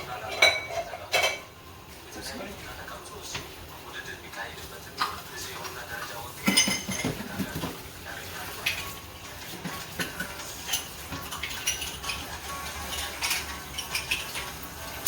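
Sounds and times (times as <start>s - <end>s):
utensils clinking against cookware: 0.0s - 1.6s, 4.6s - 15.0s.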